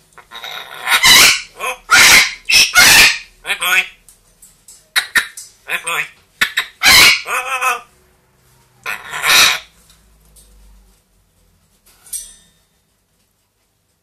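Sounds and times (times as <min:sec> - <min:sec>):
parrot calling: 0:00.2 - 0:04.0, 0:04.9 - 0:07.9, 0:08.8 - 0:09.8.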